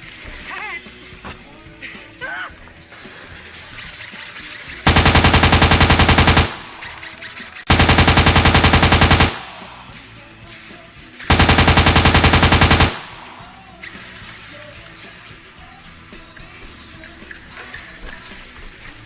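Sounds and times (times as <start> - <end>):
machine-gun bursts: 4.9 - 10.0, 11.3 - 13.6.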